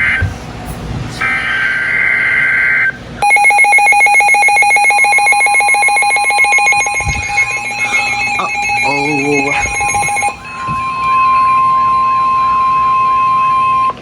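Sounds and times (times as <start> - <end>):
warbling data tones: 3.2 - 11.6
two-tone alarm tone: 3.2 - 13.3.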